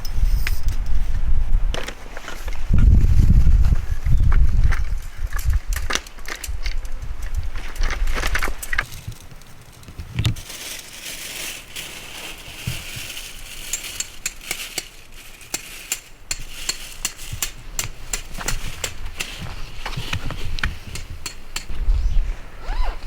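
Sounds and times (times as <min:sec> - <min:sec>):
fire popping and snapping: 0:04.3 - 0:22.1
campfire crackling: 0:05.5 - 0:21.8.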